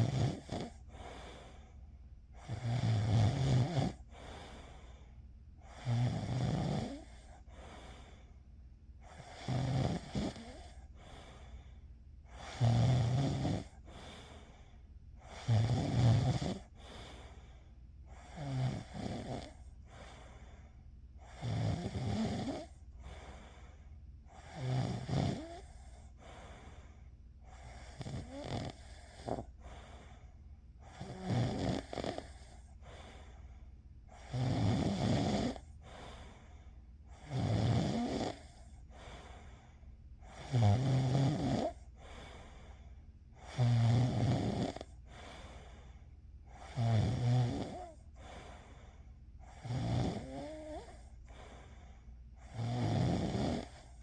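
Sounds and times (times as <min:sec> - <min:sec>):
person snoring: 0:00.0 - 0:01.5, 0:02.4 - 0:04.7, 0:05.6 - 0:08.0, 0:09.0 - 0:11.5, 0:12.3 - 0:14.5, 0:15.2 - 0:17.4, 0:18.1 - 0:20.4, 0:21.3 - 0:23.4, 0:24.4 - 0:26.0, 0:27.5 - 0:29.6, 0:30.8 - 0:32.7, 0:34.1 - 0:36.4, 0:37.1 - 0:39.3, 0:40.2 - 0:42.2, 0:43.4 - 0:45.6, 0:46.5 - 0:48.8, 0:49.4 - 0:51.8, 0:52.4 - 0:54.0.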